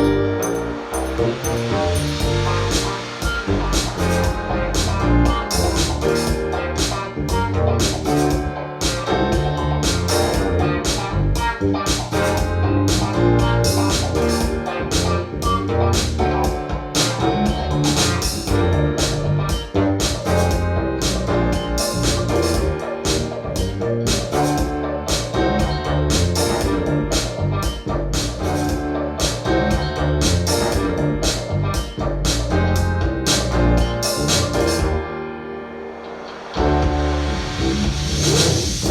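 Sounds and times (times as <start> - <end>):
music with beat and strong bass: 0.0 - 35.1, 36.5 - 38.9.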